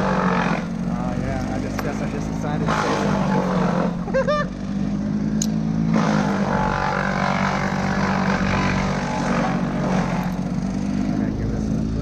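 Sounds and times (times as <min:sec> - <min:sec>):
harsh machine noise: 0:00.0 - 0:12.0
motor engine running: 0:00.0 - 0:12.0.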